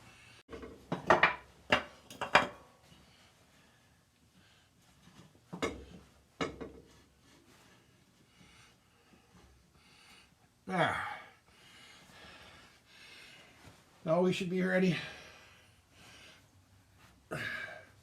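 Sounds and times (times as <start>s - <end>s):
wooden blocks knocking and clattering: 0.5s - 2.6s.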